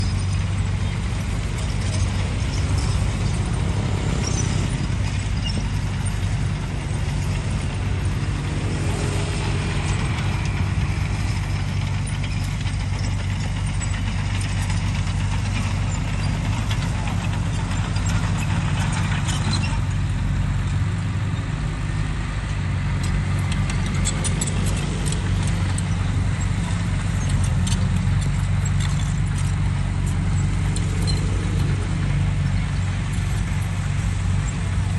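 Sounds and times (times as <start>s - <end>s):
excavator diesel engine running: 0.0s - 34.9s.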